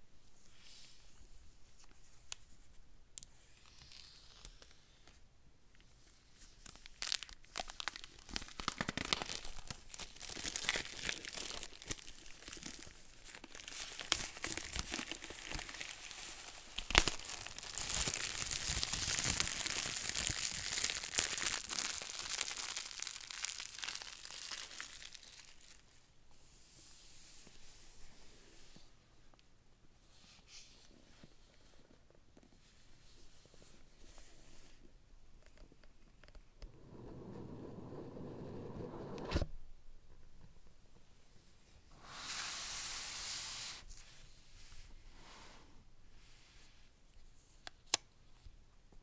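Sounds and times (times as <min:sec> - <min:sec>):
packaging tearing and crinkling: 0:06.6 - 0:25.8.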